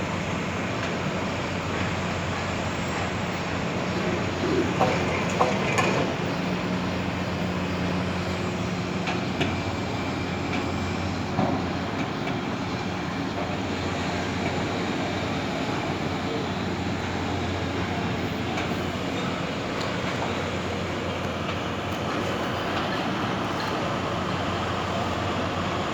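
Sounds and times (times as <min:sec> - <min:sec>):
machinery drone: 0:02.3 - 0:10.4.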